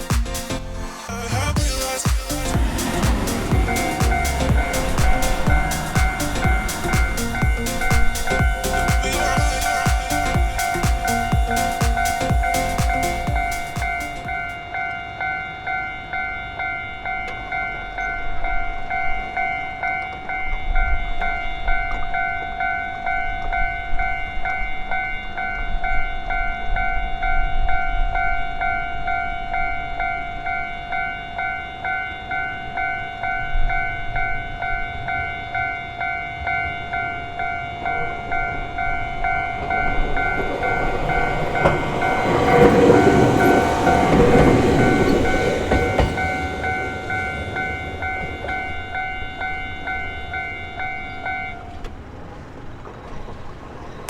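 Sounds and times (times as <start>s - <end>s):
train wheels clacking on rails: 1.6s - 14.9s, 28.2s - 54.0s
level crossing bell ringing: 1.6s - 51.7s.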